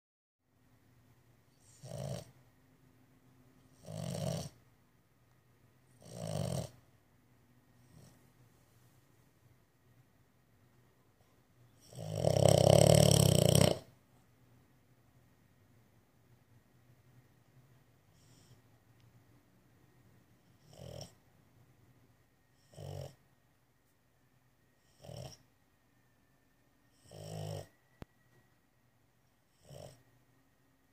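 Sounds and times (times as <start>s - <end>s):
dog snoring: 1.5s - 2.4s, 3.6s - 4.6s, 5.9s - 6.9s, 7.8s - 8.3s, 11.7s - 14.0s, 18.1s - 18.7s, 20.4s - 21.2s, 22.5s - 23.2s, 24.8s - 25.5s, 26.9s - 28.0s, 29.4s - 30.1s.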